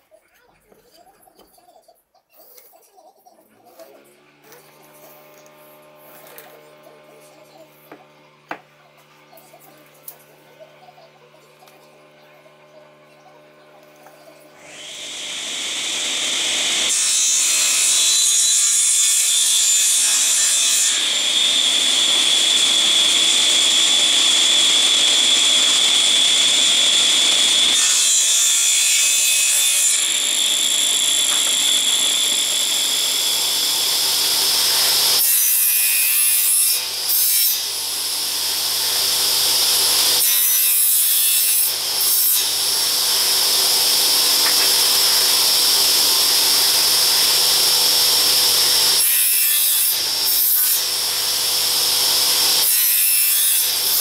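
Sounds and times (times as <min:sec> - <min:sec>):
power tool cutting wood: 0:03.6 - 0:54.0.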